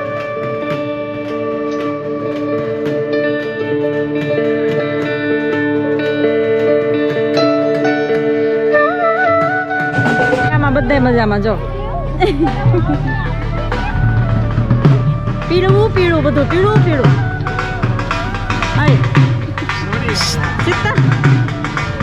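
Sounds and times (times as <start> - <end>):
instrumental background music: 6.6 - 22.0.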